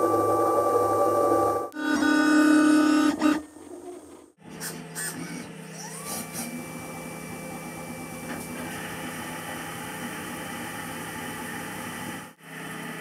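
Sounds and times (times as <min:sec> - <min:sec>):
spindle whine: 0:00.0 - 0:03.4
cnc milling machine hum: 0:04.4 - 0:13.0.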